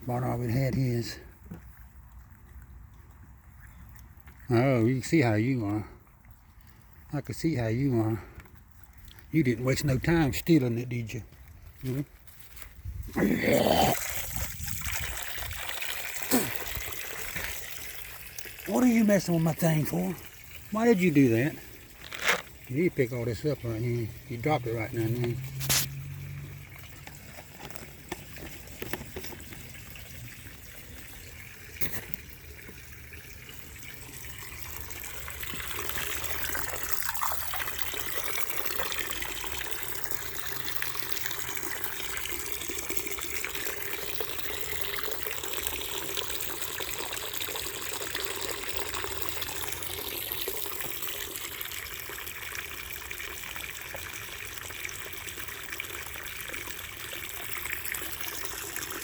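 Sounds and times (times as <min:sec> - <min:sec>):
tap water running into container: 0:09.2 - 0:59.0.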